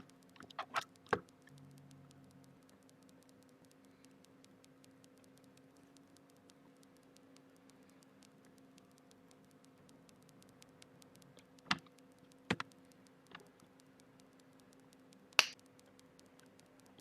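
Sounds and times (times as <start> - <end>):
plastic keyboard parts clicking: 0.0 - 6.5, 11.2 - 14.0
faint steady hum: 0.0 - 17.0.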